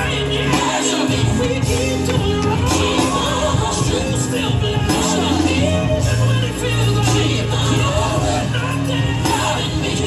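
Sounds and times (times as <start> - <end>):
gospel band music: 0.0 - 10.0.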